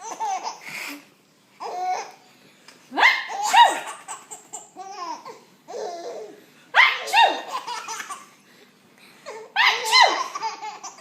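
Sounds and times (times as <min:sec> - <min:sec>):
baby laughing: 0:00.0 - 0:01.0, 0:03.3 - 0:06.4, 0:07.2 - 0:08.4, 0:09.3 - 0:11.0.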